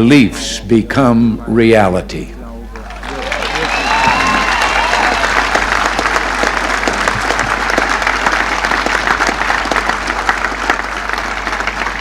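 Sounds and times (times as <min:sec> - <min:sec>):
crowd applauding: 0:02.7 - 0:12.0.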